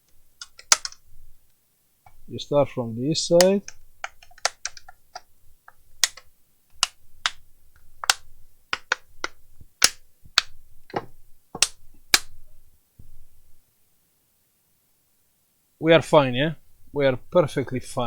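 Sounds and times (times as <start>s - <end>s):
plastic clips snapping shut: 0.4s - 1.0s, 6.0s - 7.4s.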